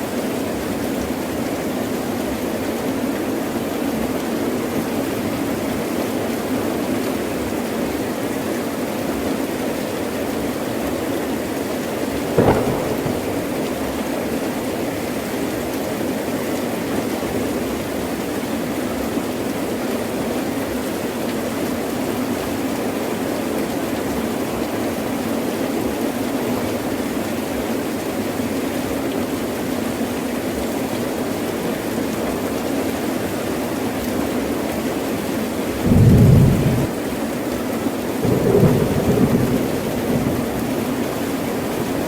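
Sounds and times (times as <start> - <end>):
heavy rain falling: 0.0 - 42.0.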